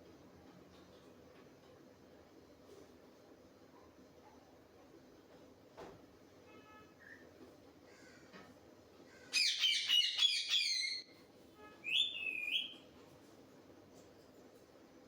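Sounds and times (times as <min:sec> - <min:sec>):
parrot squawking: 0:09.3 - 0:11.0.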